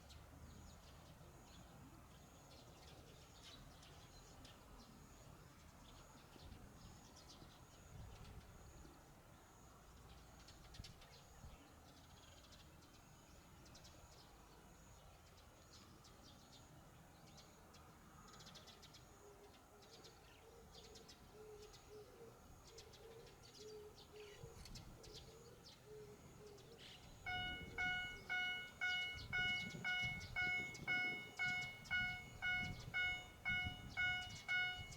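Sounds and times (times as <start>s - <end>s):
bird chirps: 23.6s - 34.9s
level crossing warning bell: 27.2s - 34.9s.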